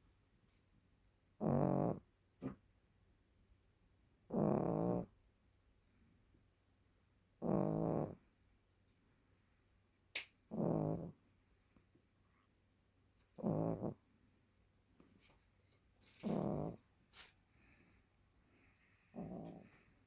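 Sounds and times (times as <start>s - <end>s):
dog snoring: 1.4s - 2.6s, 4.2s - 5.2s, 7.4s - 8.2s, 10.5s - 11.2s, 13.4s - 14.0s, 16.2s - 16.8s, 18.6s - 19.9s.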